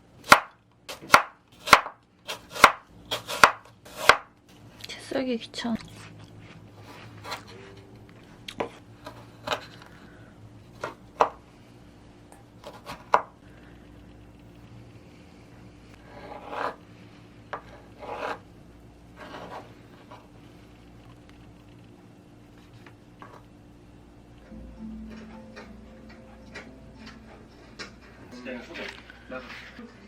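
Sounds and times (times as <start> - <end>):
knife scraping: 16.1 - 16.8, 17.6 - 18.4, 19.2 - 20.3.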